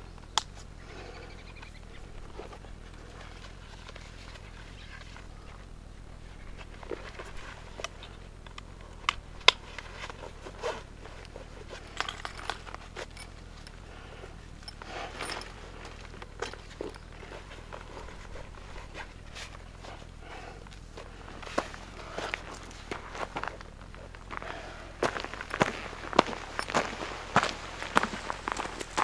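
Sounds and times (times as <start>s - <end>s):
footsteps on rocky dirt trail: 1.6s - 29.0s
stones clicking: 25.0s - 29.0s.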